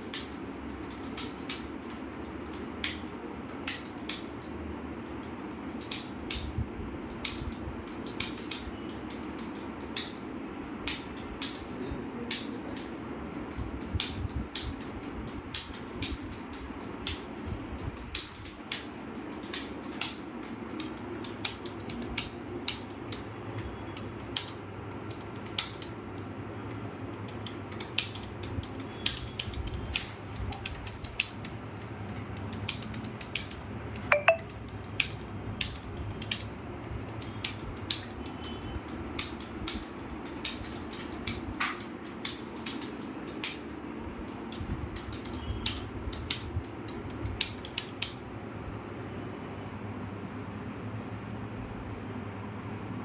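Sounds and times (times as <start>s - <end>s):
keyboard keys clicking: 18.0s - 31.6s, 32.3s - 38.3s, 38.9s - 48.2s.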